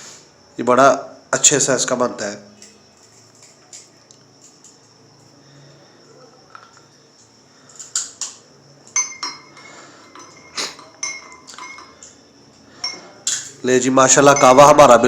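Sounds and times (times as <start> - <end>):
metal spoon clinking cups: 7.7 - 15.0.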